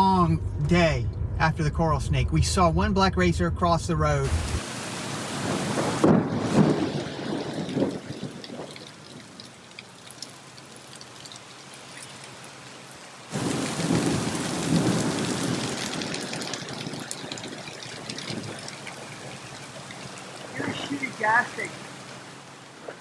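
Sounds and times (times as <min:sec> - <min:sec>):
rolling thunder rumble: 0:00.0 - 0:09.4, 0:13.3 - 0:21.2
steady rain: 0:04.2 - 0:23.0.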